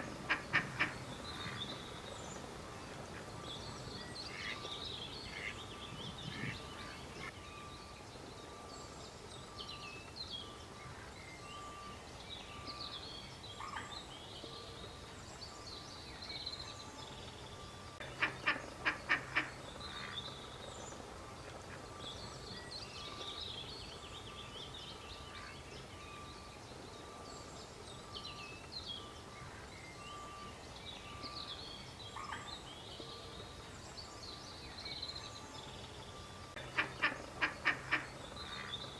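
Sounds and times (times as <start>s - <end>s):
duck quacking: 0.2s - 1.0s, 18.2s - 19.5s, 36.7s - 38.7s.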